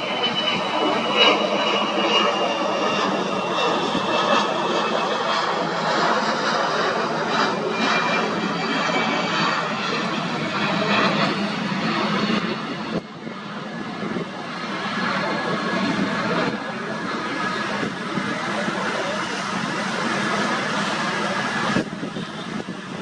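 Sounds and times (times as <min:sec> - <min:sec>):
jet engines running: 0:00.0 - 0:23.0.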